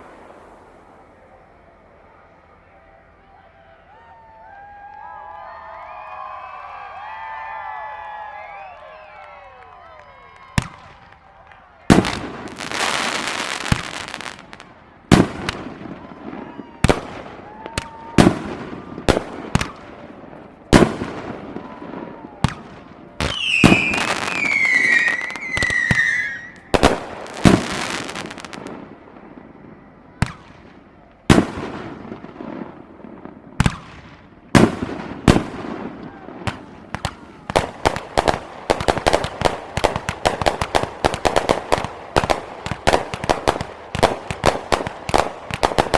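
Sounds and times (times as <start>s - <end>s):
fireworks bangs and crackle: 10.3s - 45.9s
firework whistle gliding downward: 21.2s - 30.2s.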